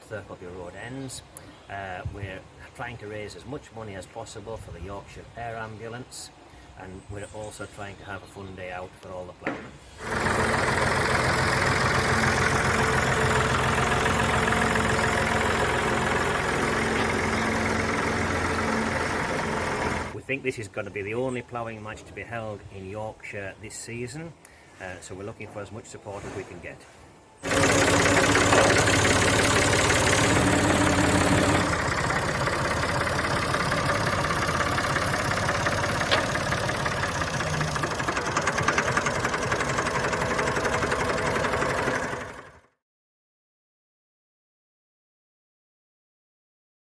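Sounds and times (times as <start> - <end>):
tractor diesel engine running: 9.9 - 20.2, 27.4 - 42.7.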